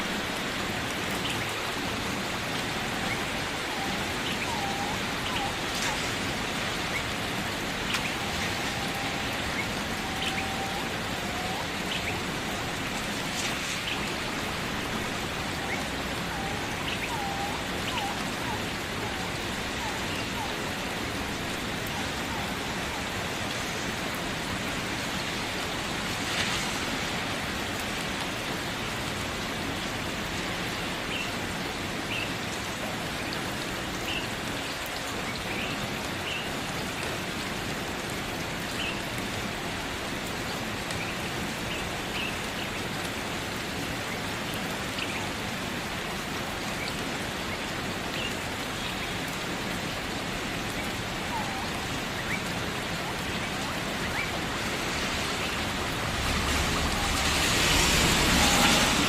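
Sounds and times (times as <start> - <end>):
steady rain falling: 0.0 - 59.0.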